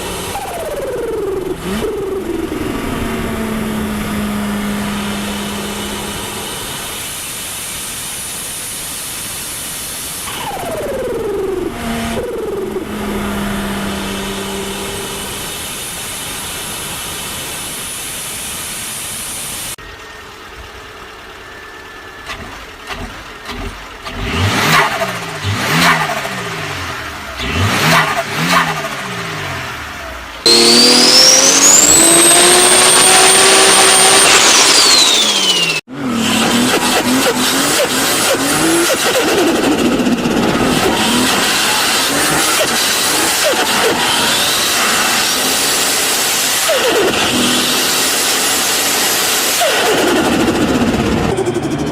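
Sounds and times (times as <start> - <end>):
car engines revving: 0.0 - 7.3, 10.2 - 17.5, 22.2 - 51.9
forced induction whine: 0.0 - 22.8, 30.4 - 35.9.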